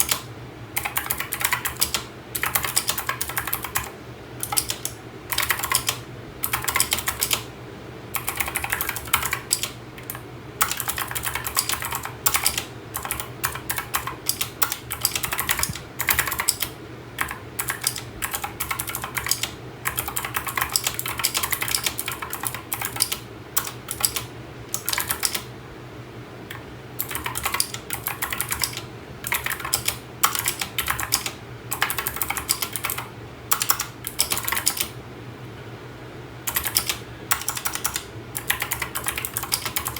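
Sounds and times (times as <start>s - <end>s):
faint steady low hum: 0.0s - 39.9s
mechanical keyboard key clicks: 1.0s - 7.4s, 8.2s - 25.4s.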